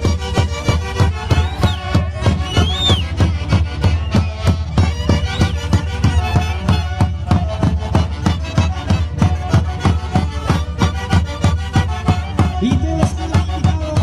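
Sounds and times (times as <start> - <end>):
folk ensemble of violins and winds: 0.0 - 14.0
steady drum beat: 0.0 - 14.0.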